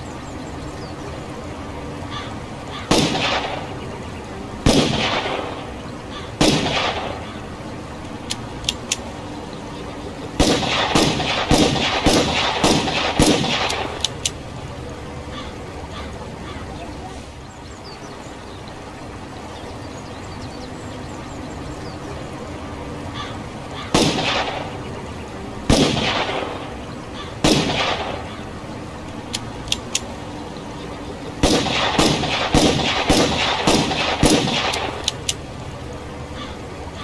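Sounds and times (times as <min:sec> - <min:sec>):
steady background noise: 0:00.0 - 0:37.0
revolver shots echoing: 0:02.8 - 0:03.8, 0:04.6 - 0:07.5, 0:10.4 - 0:14.2, 0:23.9 - 0:24.8, 0:25.7 - 0:28.5, 0:31.4 - 0:35.3
light clicks: 0:08.0 - 0:09.2, 0:13.2 - 0:14.4, 0:29.1 - 0:30.2, 0:34.2 - 0:35.5.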